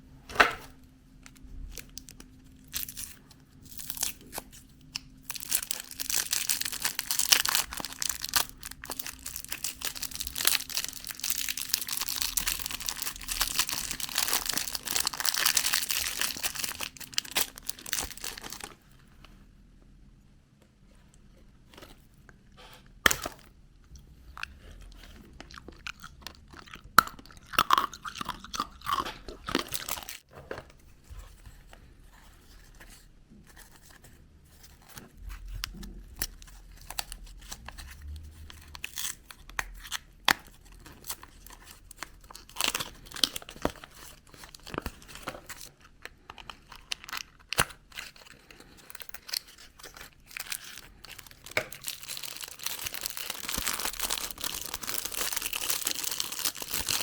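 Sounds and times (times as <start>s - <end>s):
wrappers crinkling: 1.7s - 18.8s, 29.4s - 30.3s, 40.5s - 57.0s.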